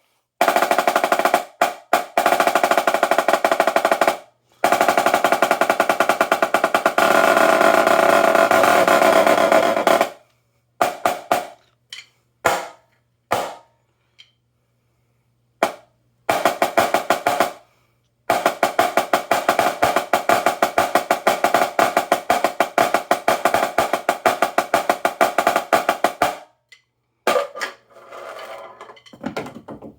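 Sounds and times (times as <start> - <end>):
snare drum roll: 0.4 - 10.2, 10.8 - 11.6, 15.6 - 17.7, 18.3 - 26.4.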